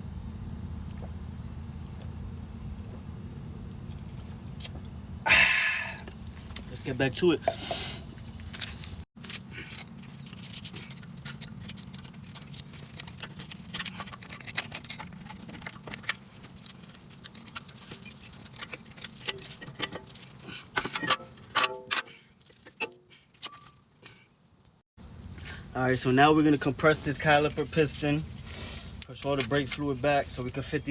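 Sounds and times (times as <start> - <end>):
metal tools clinking: 9.7 - 24.3, 26.1 - 30.9.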